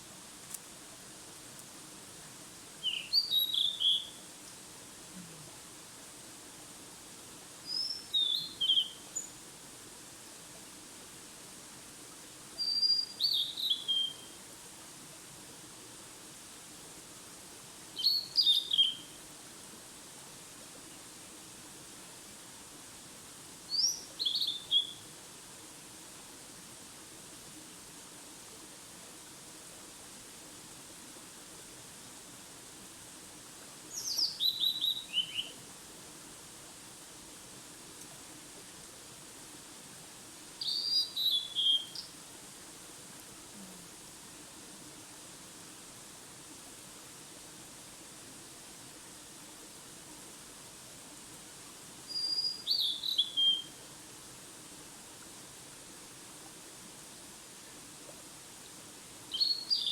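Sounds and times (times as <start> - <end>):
background hiss: 0.0 - 59.9
songbird singing: 2.8 - 4.2, 7.7 - 9.4, 12.6 - 14.3, 18.0 - 19.2, 23.7 - 25.0, 33.9 - 35.6, 40.6 - 42.1, 52.1 - 53.8, 59.3 - 59.9.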